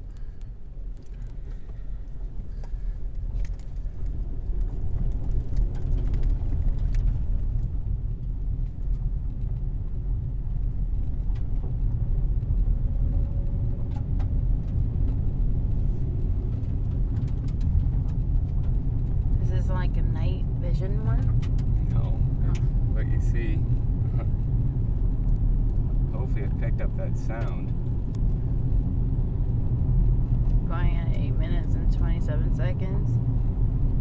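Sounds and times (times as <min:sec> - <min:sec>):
engine and road rumble: 0:00.0 - 0:34.0.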